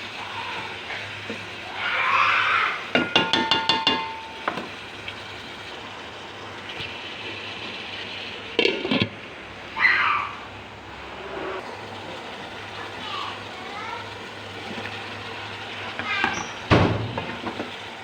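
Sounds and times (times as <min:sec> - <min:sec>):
sizzling in a pan: 0:00.0 - 0:18.0
metal utensil clinking on pan: 0:02.9 - 0:04.6.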